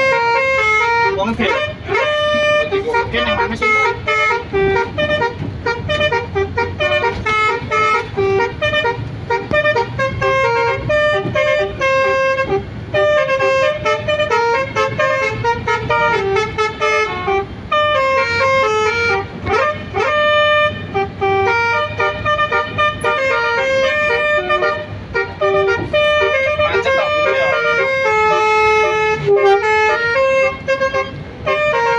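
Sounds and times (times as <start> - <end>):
multi-tone bus horn melody: 0.0 - 31.9.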